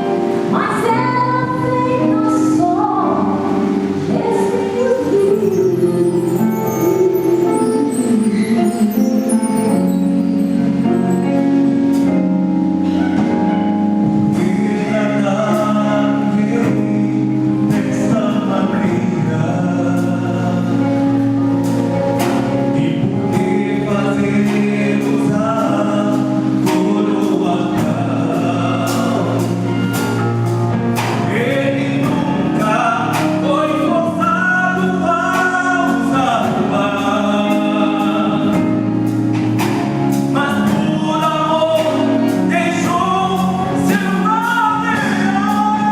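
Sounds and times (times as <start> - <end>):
voices singing gospel song: 0.0 - 12.1, 12.9 - 45.9
band playing: 0.0 - 45.9
regular drum beat: 10.6 - 45.9.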